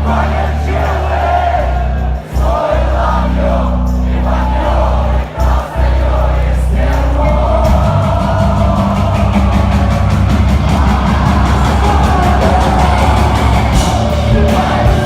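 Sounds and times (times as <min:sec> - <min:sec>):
heavy bass and guitar: 0:00.0 - 0:15.0
voices singing: 0:00.0 - 0:15.0.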